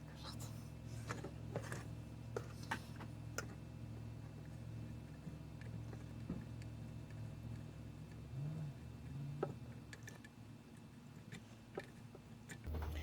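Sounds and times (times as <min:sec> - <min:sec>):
low hum: 0:12.7 - 0:13.0.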